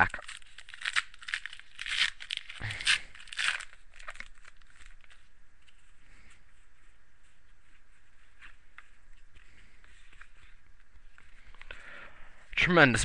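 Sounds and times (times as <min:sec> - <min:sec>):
wrapper tearing and crinkling: 0:00.0 - 0:05.3
faint handling of wrapper: 0:00.0 - 0:11.8.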